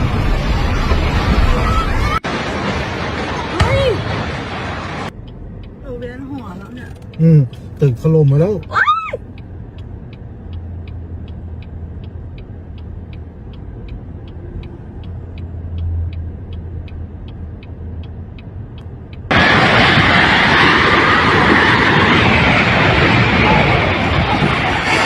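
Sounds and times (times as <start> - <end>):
loud rushing noise: 0.0 - 5.1, 19.3 - 25.0
turn signal relay ticking: 5.1 - 19.4.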